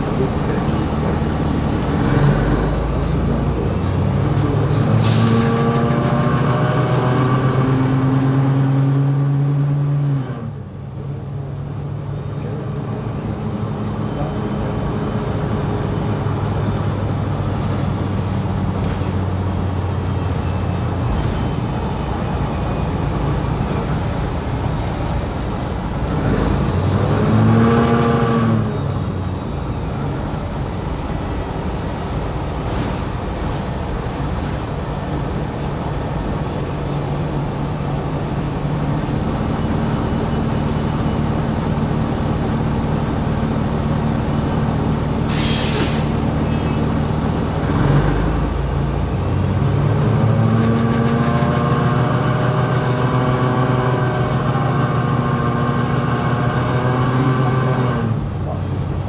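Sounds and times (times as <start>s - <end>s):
bus engine accelerating: 0.0s - 59.0s
short air hiss: 45.3s - 46.2s.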